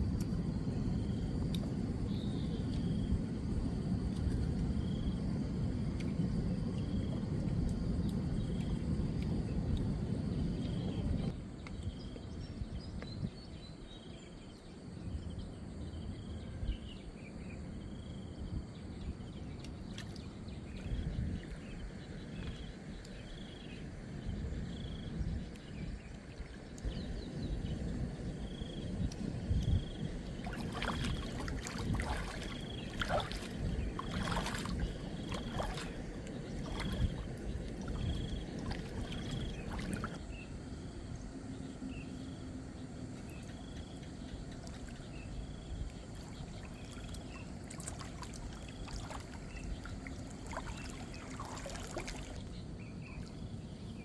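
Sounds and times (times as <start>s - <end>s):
water lapping around a boat: 0.0s - 12.2s, 17.8s - 54.0s
sharp knocks and splashes: 30.4s - 40.2s, 46.2s - 52.5s.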